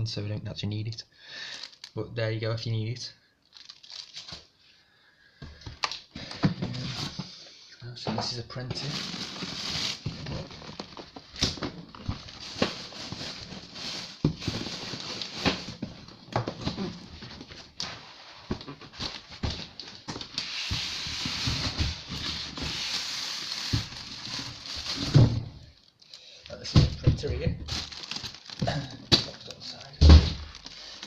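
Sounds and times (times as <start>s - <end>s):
packaging rustling and crinkling: 1.5s - 2.0s, 3.4s - 4.5s, 8.8s - 31.0s.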